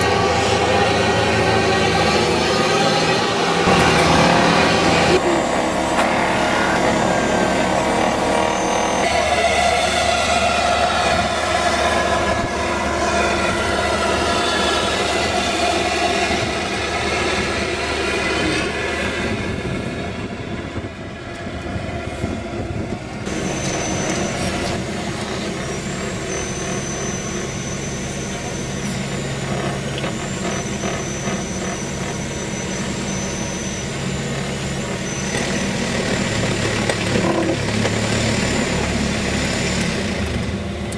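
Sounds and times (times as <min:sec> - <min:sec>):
excavator engine and hydraulics: 0:00.0 - 0:40.9
high thin whining tones: 0:00.2 - 0:19.5, 0:23.2 - 0:36.3.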